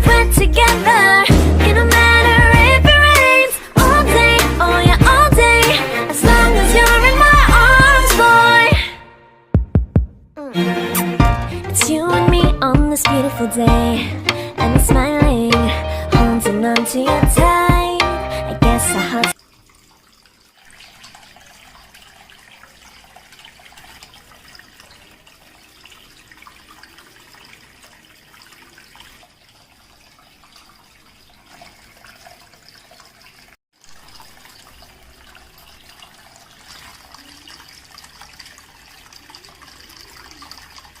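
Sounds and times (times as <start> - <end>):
water trickling and splashing: 0.0 - 8.6, 18.9 - 41.0.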